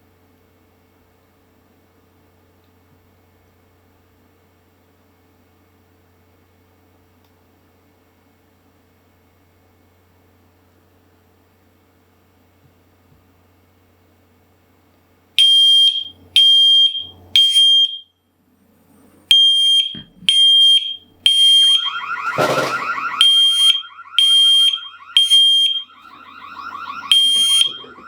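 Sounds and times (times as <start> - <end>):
smoke alarm beeping: 15.4 - 18.1, 19.3 - 28.0
low warbling tone: 21.6 - 28.0.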